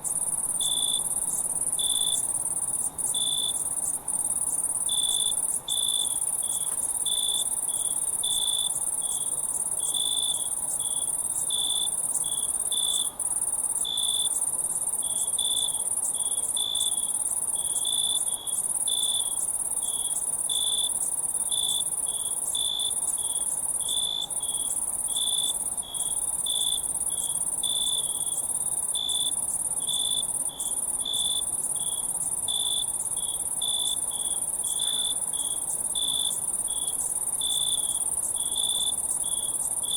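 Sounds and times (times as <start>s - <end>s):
high-pitched insect trill: 0.0s - 13.1s, 13.7s - 39.9s
crickets chirping: 0.0s - 39.9s.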